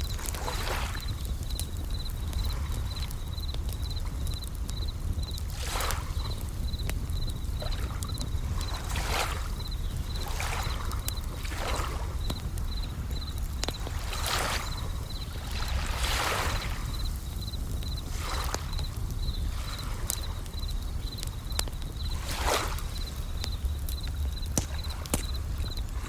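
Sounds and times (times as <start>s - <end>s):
campfire crackling pops: 0.0s - 26.0s
crickets chirping: 0.0s - 26.0s
low rumble of surf: 0.0s - 26.0s
waves washing in and out: 13.8s - 17.2s, 18.0s - 20.1s, 22.2s - 23.2s.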